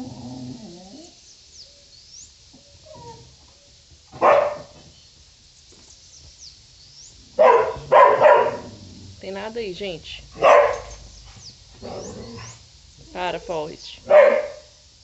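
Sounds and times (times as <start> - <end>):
dog whining faintly: 2.6 - 3.3
dog barking: 4.2 - 4.8, 7.4 - 8.7, 10.4 - 11.0, 14.0 - 14.7.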